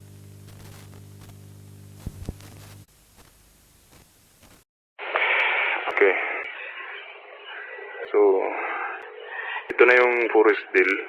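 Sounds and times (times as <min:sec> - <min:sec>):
low electrical hum: 0:00.0 - 0:04.5.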